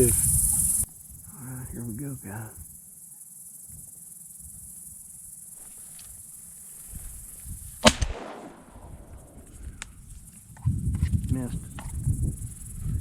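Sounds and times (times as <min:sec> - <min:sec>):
crickets buzzing: 0:00.0 - 0:13.0
shotgun shot: 0:07.8 - 0:09.4.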